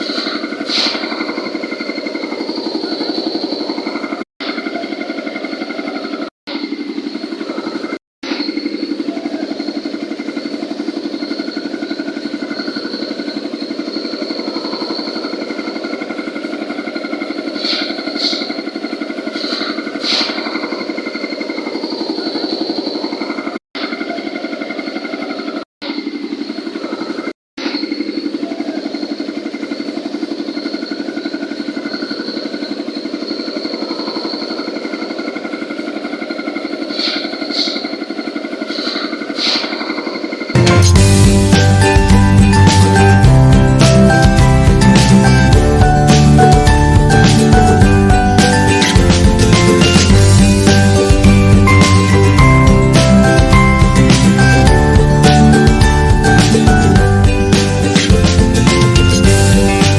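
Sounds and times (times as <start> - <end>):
steady high whine: 0.0 - 59.9
concrete mixer engine throbbing: 40.6 - 59.9.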